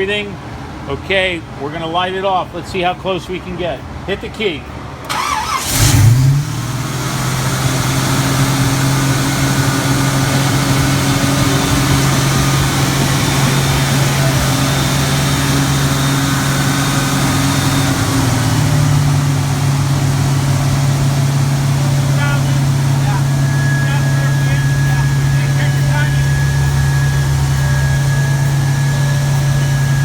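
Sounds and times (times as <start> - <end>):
car engine starting and idling fast: 5.0 - 30.0.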